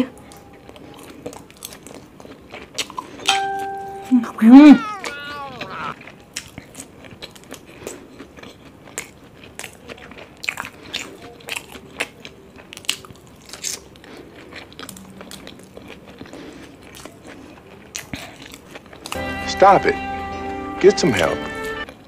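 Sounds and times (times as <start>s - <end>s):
crunchy bites and chewing: 0.3s - 3.3s, 4.9s - 19.2s.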